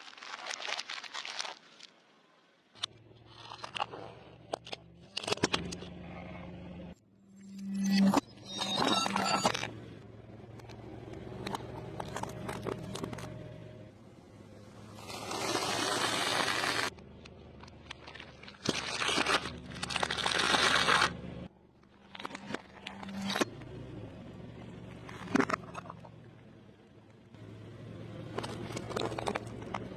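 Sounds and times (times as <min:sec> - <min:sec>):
chewing and crunching food: 0:00.0 - 0:01.9, 0:02.7 - 0:06.5, 0:11.3 - 0:13.4, 0:16.8 - 0:21.1, 0:28.2 - 0:29.9.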